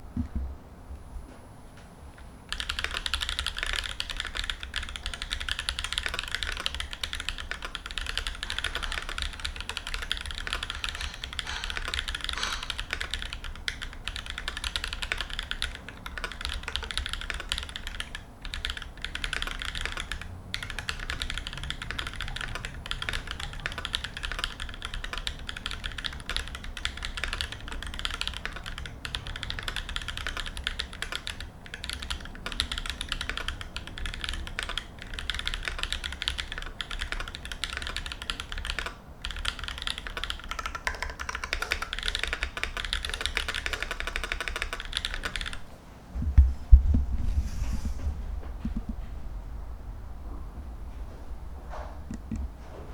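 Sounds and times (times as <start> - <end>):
mechanical keyboard typing: 2.4 - 45.6.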